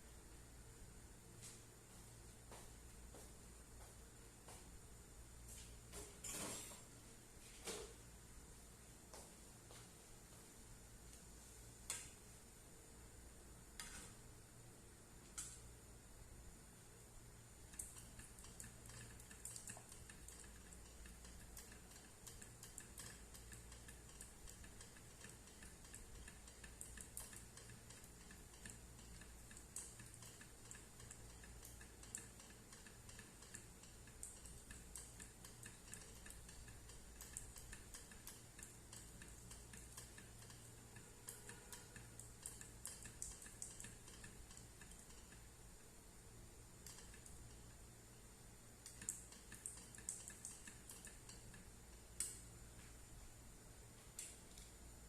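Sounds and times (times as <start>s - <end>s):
low steady hum: 0.0s - 55.0s
faint light clicks and ticks: 17.7s - 45.5s, 46.8s - 47.8s, 48.8s - 53.0s.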